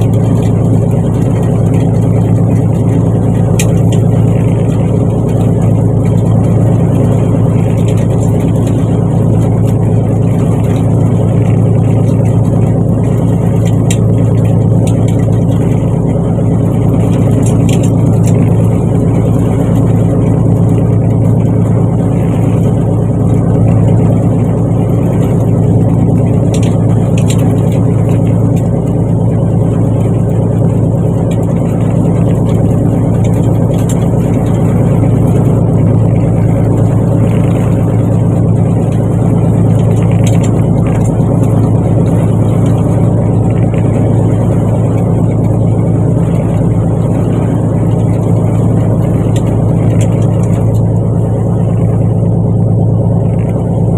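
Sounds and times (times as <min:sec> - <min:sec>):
boat engine droning: 0:00.0 - 0:53.9.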